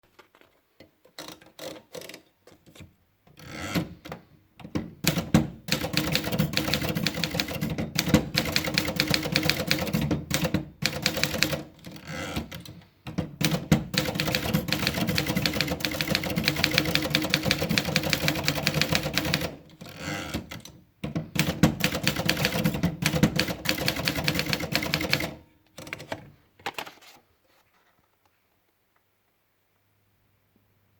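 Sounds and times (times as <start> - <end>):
manual typewriter typing: 4.7 - 27.0.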